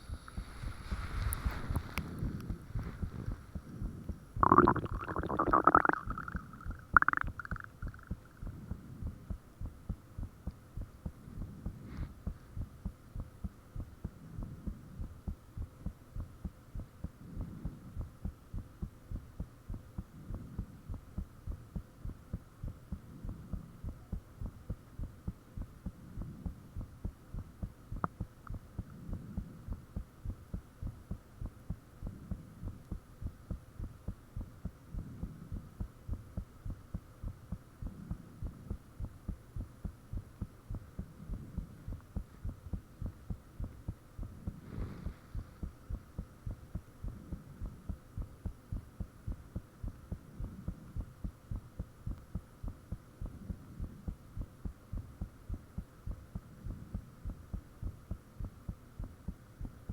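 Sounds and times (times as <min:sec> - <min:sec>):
faint steady hum: 0:00.0 - 0:59.9
heartbeat thumps: 0:03.0 - 0:59.9.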